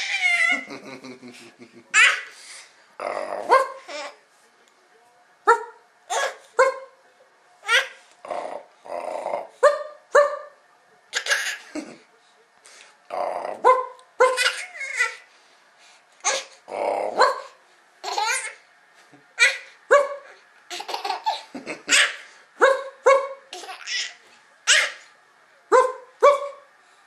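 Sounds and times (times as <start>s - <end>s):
baby laughing: 0.0s - 1.2s, 11.1s - 12.0s, 14.2s - 15.2s, 18.0s - 18.6s, 20.7s - 22.3s, 23.5s - 25.0s.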